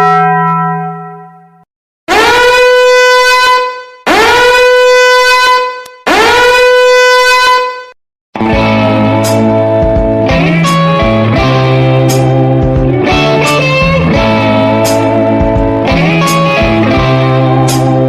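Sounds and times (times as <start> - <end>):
horn-like blast: 2.1 - 9.6.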